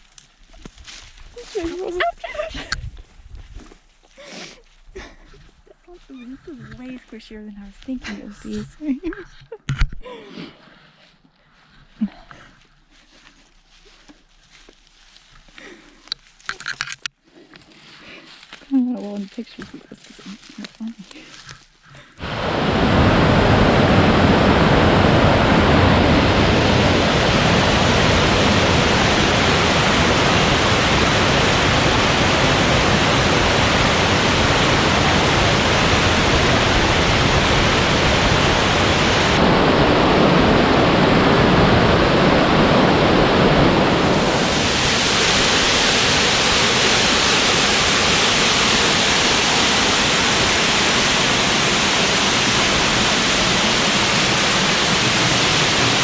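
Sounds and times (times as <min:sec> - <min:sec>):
waterfall roaring: 0:22.2 - 0:56.0.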